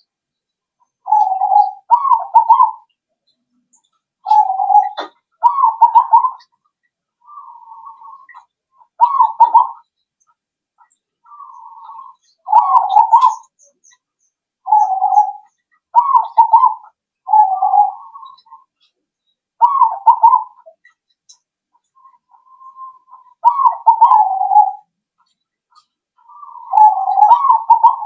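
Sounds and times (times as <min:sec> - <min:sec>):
dove cooing: 0:01.0 - 0:02.9, 0:04.2 - 0:06.5, 0:07.2 - 0:09.9, 0:11.3 - 0:13.6, 0:14.6 - 0:18.7, 0:19.6 - 0:20.8, 0:22.0 - 0:24.9, 0:26.2 - 0:28.0.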